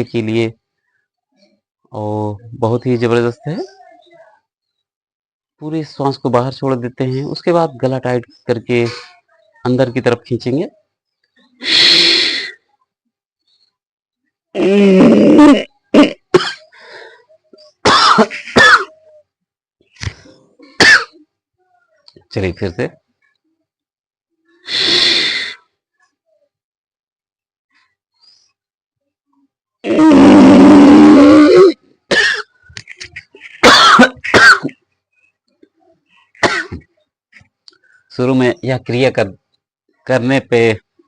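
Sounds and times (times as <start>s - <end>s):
person coughing and clearing throat: 14.6s - 16.8s, 17.8s - 19.2s, 20.2s - 21.3s, 31.5s - 34.8s, 36.3s - 37.0s
person coughing: 17.9s - 19.0s, 20.6s - 21.2s, 32.1s - 32.5s, 33.6s - 34.8s, 36.4s - 36.9s.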